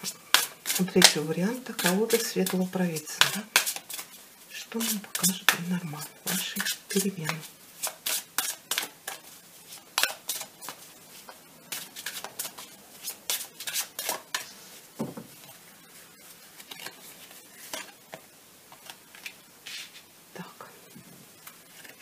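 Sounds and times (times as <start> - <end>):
cards shuffled and laid out: 3.2 - 4.2, 6.3 - 15.2, 16.6 - 20.1, 21.4 - 22.0.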